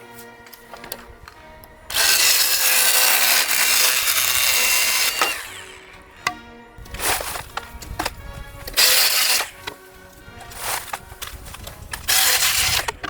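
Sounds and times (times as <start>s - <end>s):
background music: 0.0s - 13.0s
chainsaw cutting wood: 1.9s - 9.8s, 10.5s - 13.0s.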